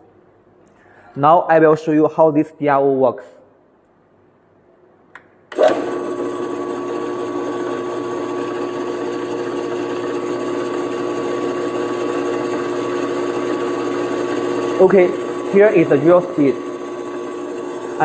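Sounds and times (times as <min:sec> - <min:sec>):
drill press motor whine: 0:05.5 - 0:18.0.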